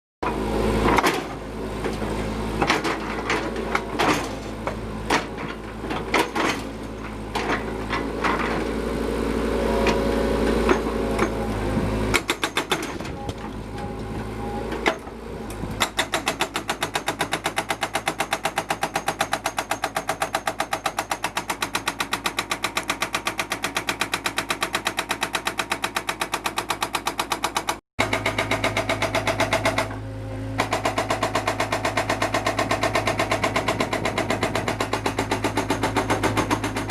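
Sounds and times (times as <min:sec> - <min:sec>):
diesel engine running: 0:00.2 - 0:16.0, 0:28.0 - 0:36.9.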